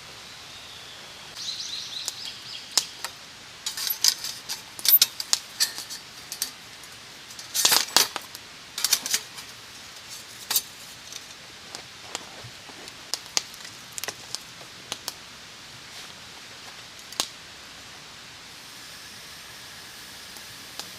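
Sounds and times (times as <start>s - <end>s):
metal pieces clinking: 3.7s - 8.2s, 8.8s - 9.5s.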